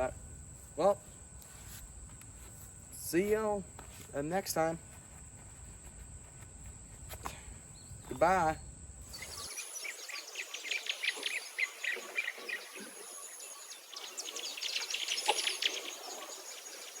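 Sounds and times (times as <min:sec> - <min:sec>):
high insect buzz: 0:05.2 - 0:17.0
birds chirping: 0:07.3 - 0:17.0.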